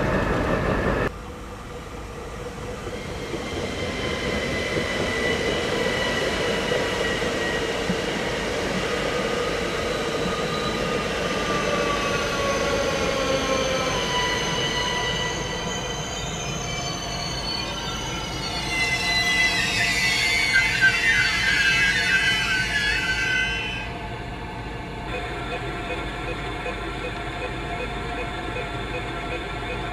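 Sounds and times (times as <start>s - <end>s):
train brakes squealing: 2.5s - 24.1s.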